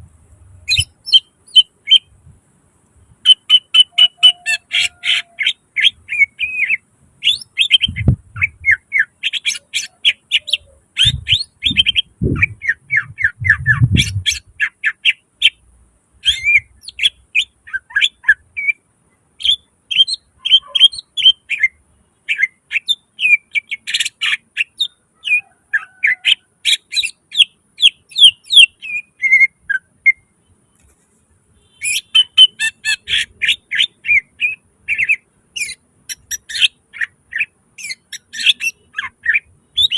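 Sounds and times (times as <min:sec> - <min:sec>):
bird singing sharp chirps: 0:03.1 - 0:15.6, 0:31.6 - 0:39.9.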